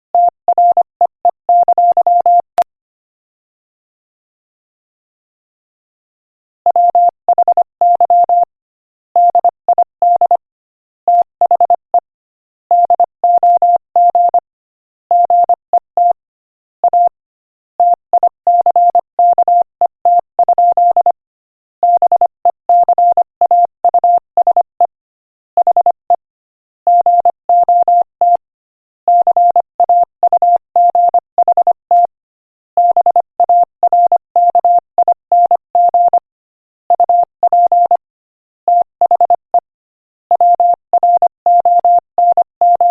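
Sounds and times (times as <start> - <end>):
morse code beeping: 40.3 - 42.9.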